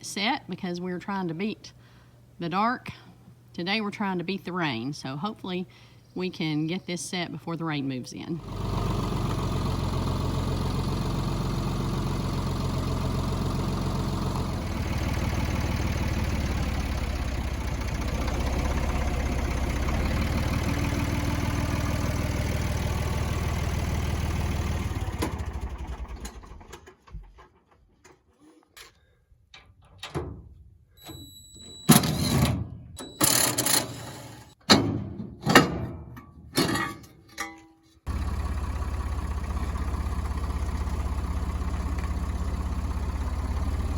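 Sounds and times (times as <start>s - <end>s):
tractor engine running: 8.4s - 27.5s, 38.1s - 43.9s
metallic knocks and clanks: 34.6s - 37.9s.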